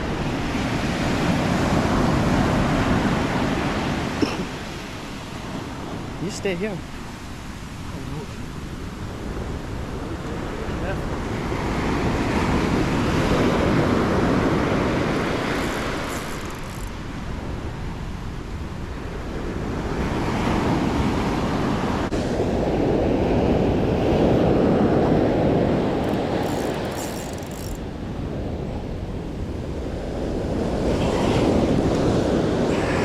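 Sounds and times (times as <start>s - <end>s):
ocean surf on rocky shore: 0.0s - 33.0s
wind buffeting microphone: 0.0s - 33.0s.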